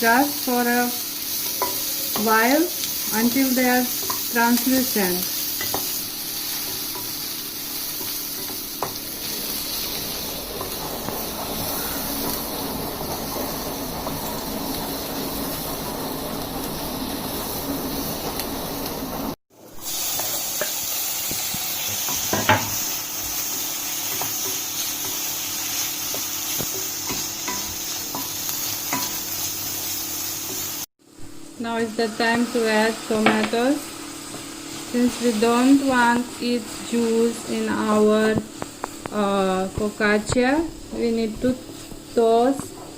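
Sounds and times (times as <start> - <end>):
onion sizzling in a pan: 0.0 - 42.9.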